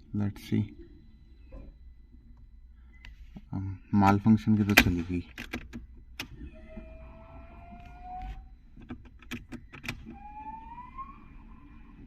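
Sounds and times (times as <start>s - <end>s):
fuel pump whining: 5.8s - 12.0s.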